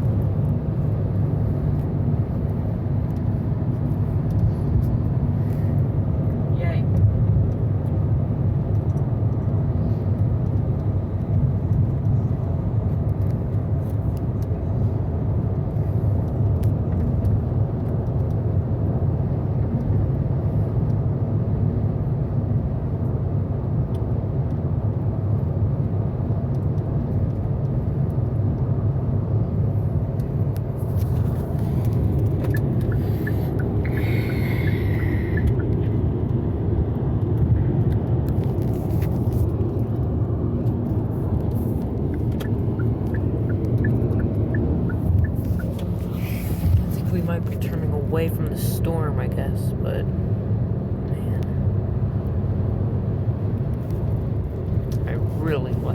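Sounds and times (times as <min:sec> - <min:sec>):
car road rumble from inside cabin: 0:00.0 - 0:55.9.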